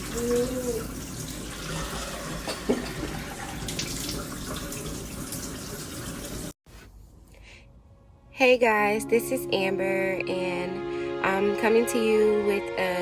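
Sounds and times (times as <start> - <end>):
water running into a sink: 0.0 - 6.6.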